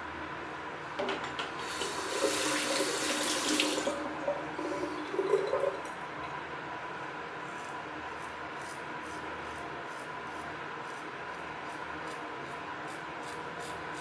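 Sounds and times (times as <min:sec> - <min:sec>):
tap water running into sink: 0:01.6 - 0:05.9.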